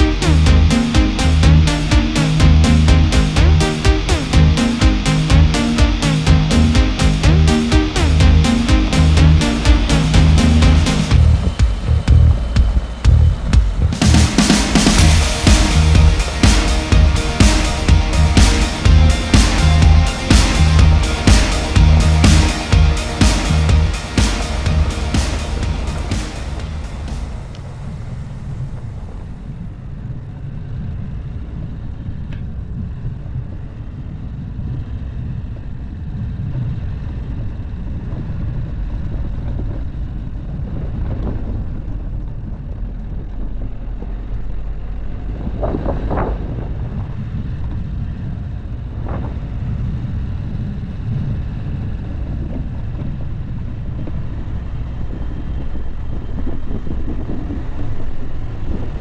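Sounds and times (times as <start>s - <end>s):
engine and tyres rumbling: 8.2s - 15.2s.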